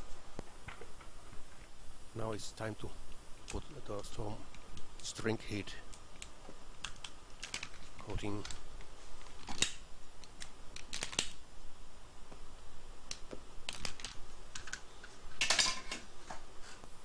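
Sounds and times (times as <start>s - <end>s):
small parts and tools clicking: 5.9s - 8.6s, 13.1s - 16.1s.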